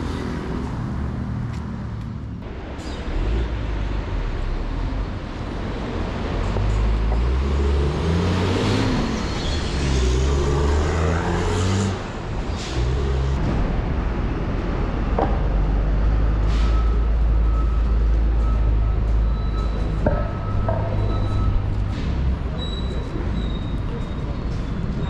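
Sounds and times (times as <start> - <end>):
vehicle engine accelerating: 0.0 - 23.1
city road traffic: 0.0 - 25.0.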